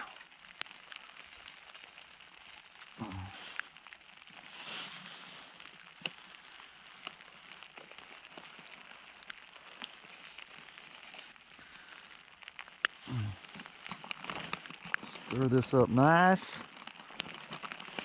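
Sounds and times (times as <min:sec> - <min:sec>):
faint steady hiss: 0:00.0 - 0:18.0
sleet ticking on tarp: 0:00.0 - 0:18.0.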